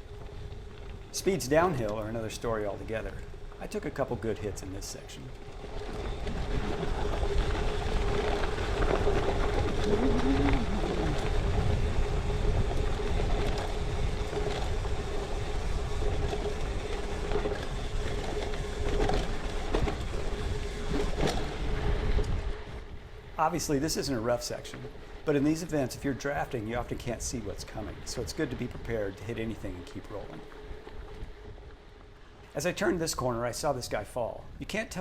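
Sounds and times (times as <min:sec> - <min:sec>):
wind noise on microphone: 0:05.7 - 0:23.2.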